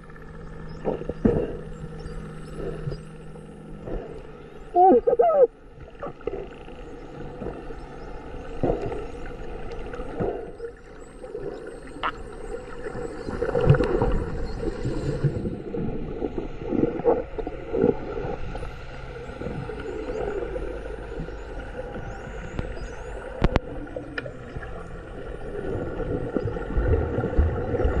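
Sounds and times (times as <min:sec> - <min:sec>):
steady low rumble: 0:00.0 - 0:28.0
whale moans: 0:00.8 - 0:06.8.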